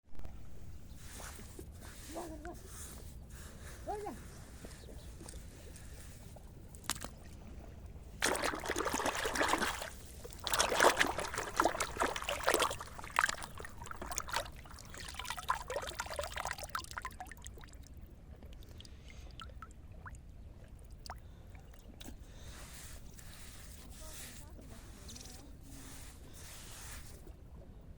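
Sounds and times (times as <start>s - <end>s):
water splashing and pouring: 8.2s - 20.2s
water dripping: 8.2s - 22.1s.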